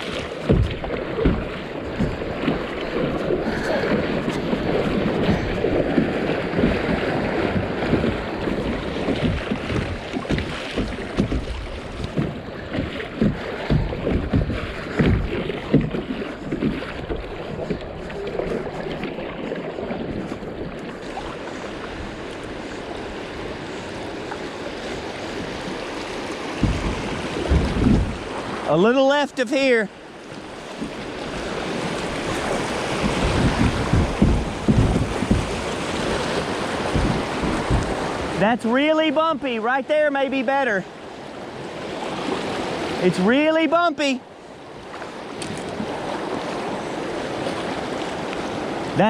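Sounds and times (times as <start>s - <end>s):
wind on the microphone: 0.0s - 28.6s, 30.8s - 38.4s
paddle splashing and knocking: 0.0s - 49.0s
rushing water: 0.0s - 49.0s.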